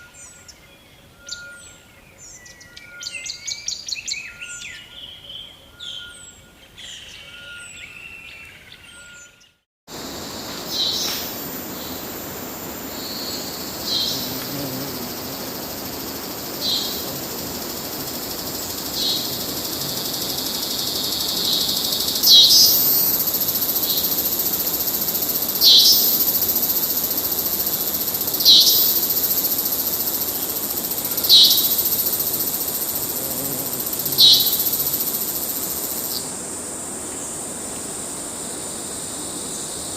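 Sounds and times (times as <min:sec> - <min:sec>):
high insect chorus: 0:09.9 - 0:39.9.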